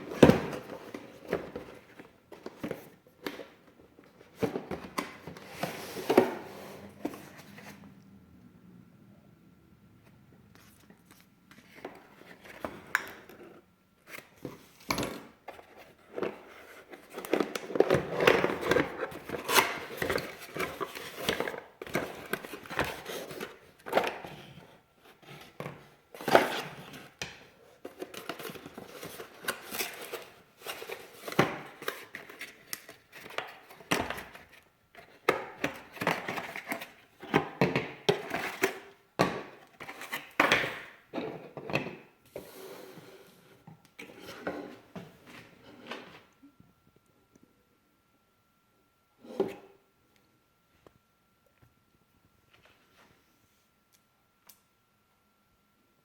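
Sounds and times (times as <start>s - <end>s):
cardboard and plastic rustling: 0.0s - 7.9s, 10.6s - 46.3s.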